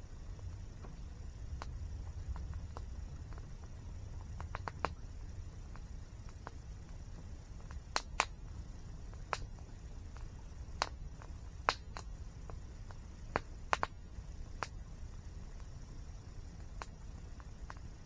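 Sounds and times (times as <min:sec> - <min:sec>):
low rumble: 0:00.0 - 0:06.0
wood fire crackling: 0:00.0 - 0:18.0.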